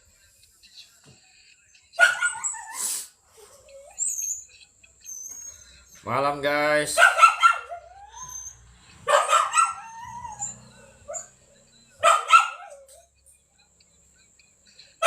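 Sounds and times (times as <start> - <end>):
dog barking: 2.0 - 2.8, 6.9 - 11.4, 12.0 - 13.0.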